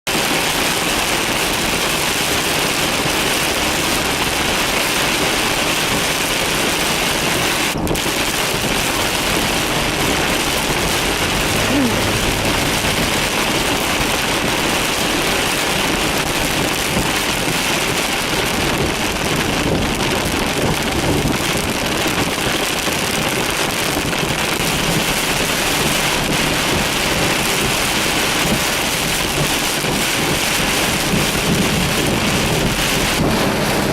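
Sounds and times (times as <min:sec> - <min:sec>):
heavy rain falling: 0:00.1 - 0:33.9.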